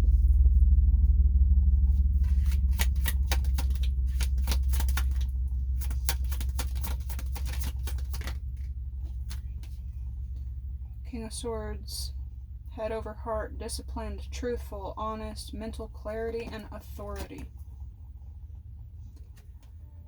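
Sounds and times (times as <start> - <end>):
steady low hum: 0.0 - 20.0
cards being shuffled: 2.2 - 9.8.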